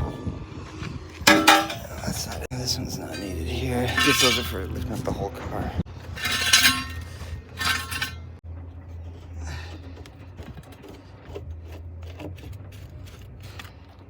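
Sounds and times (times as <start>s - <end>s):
metal parts rattling and clicking: 1.3s - 1.8s, 3.9s - 4.6s, 6.0s - 8.2s
metallic clink: 1.3s - 1.9s, 3.9s - 4.6s, 6.2s - 8.3s.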